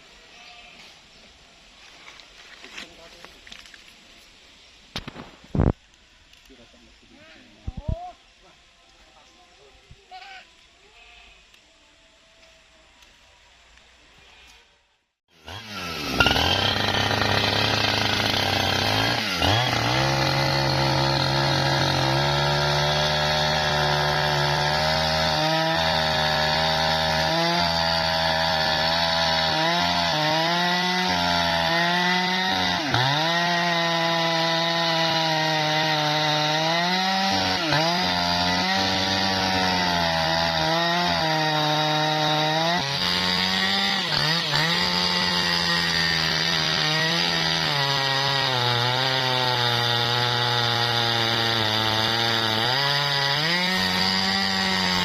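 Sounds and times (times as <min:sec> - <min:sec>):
chainsaw cutting through log: 0:15.3 - 0:55.0.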